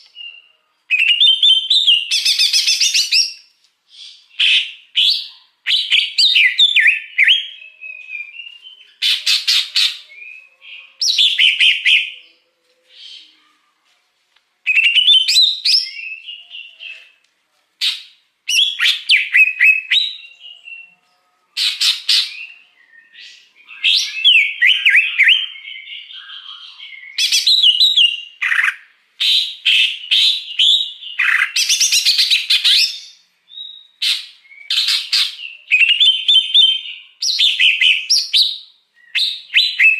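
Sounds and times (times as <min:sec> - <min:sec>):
bird singing chirps and trills: 0:14.7 - 0:17.2, 0:18.5 - 0:28.8.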